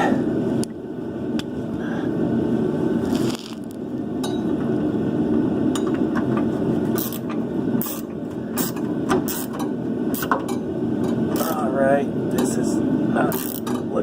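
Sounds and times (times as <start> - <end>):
steady low rumble: 0.0 - 14.0.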